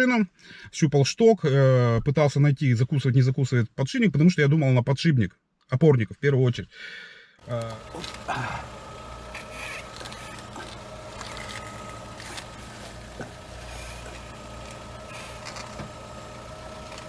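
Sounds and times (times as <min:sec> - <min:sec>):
car engine idling: 0:07.4 - 0:17.0
suspension rubbing noises: 0:07.4 - 0:17.0.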